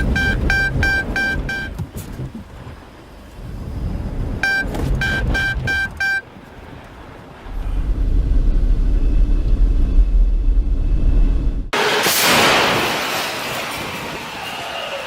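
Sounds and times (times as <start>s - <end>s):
short electronic beeps: 0.0s - 1.8s, 4.4s - 6.3s
car moving low rumble: 0.0s - 11.8s.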